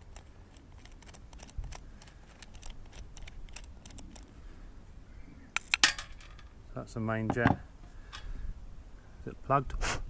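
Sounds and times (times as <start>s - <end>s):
screwdriver clicking on metal parts: 0.0s - 4.3s.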